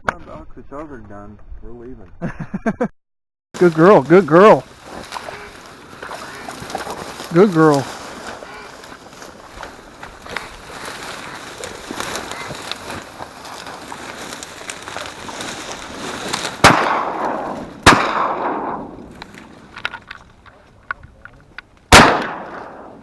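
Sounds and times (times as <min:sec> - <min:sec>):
shotgun blasts: 0:16.5 - 0:19.8, 0:21.9 - 0:23.0.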